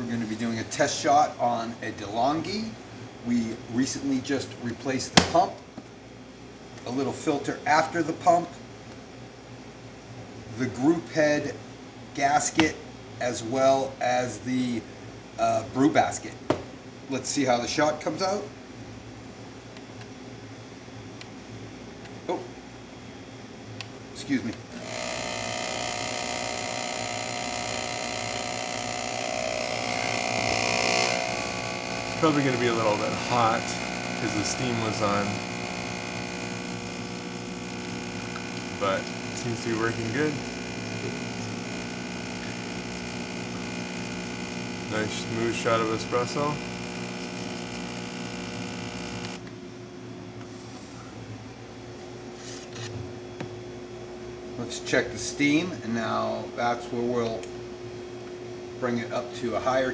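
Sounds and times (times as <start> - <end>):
faint steady hum: 23.7 - 51.6
espresso machine pump buzzing: 24.7 - 49.5.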